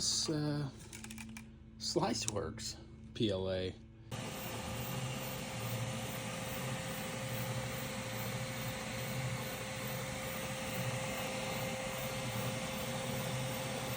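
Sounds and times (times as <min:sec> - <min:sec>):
printer fans whirring: 0:04.1 - 0:13.9.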